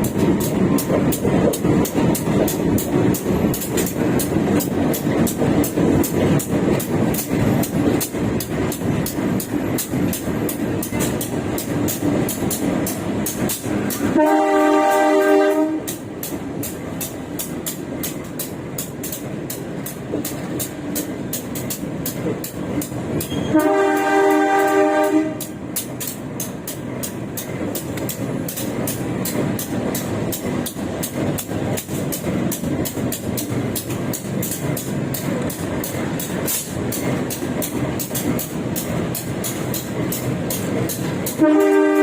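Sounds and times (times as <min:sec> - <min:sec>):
train wheels clicking on rails: 0:00.0 - 0:42.0
locomotive horn blasts: 0:14.1 - 0:16.0, 0:23.3 - 0:25.6, 0:41.4 - 0:42.0.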